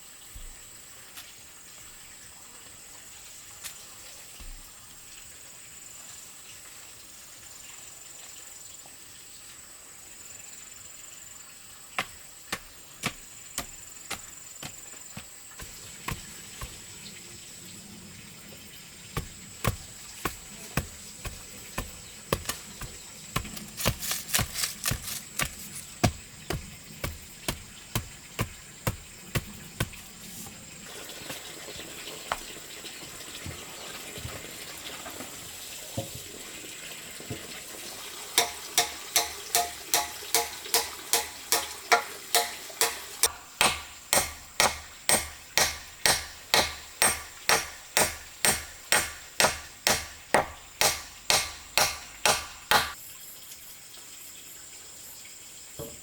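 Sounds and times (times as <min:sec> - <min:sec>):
hammer blows on wood: 0:38.4 - 0:53.0.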